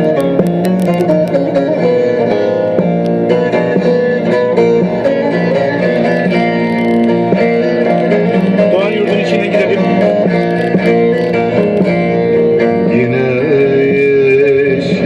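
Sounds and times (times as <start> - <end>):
plucked string folk music: 0.0 - 15.0.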